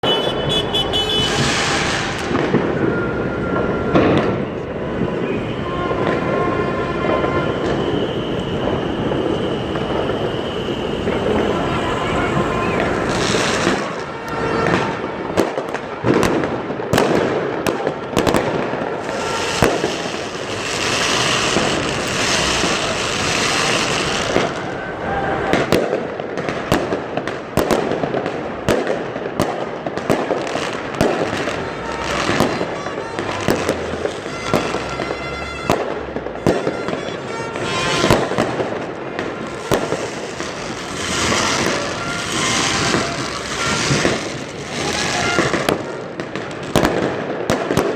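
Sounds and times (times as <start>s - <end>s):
fireworks bangs: 0.0s - 47.9s
fireworks crackling: 0.0s - 47.9s.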